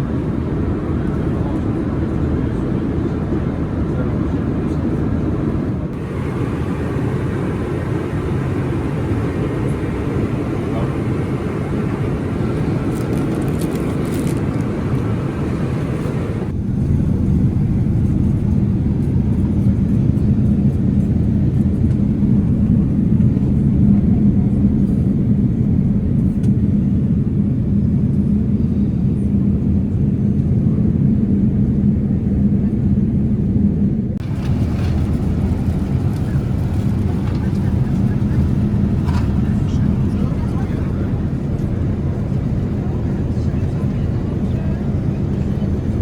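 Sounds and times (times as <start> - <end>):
airliner cabin noise: 0.0 - 46.0
deep loud rumble: 0.0 - 46.0.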